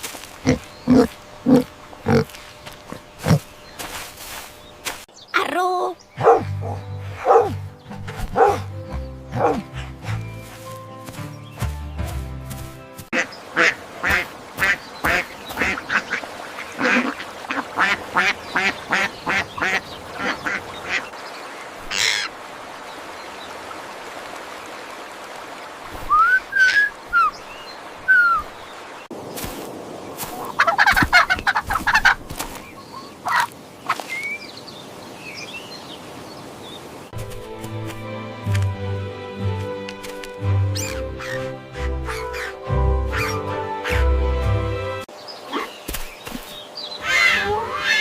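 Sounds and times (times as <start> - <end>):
ducks quacking: 13.1 - 21.1, 30.2 - 32.2, 40.8 - 44.2.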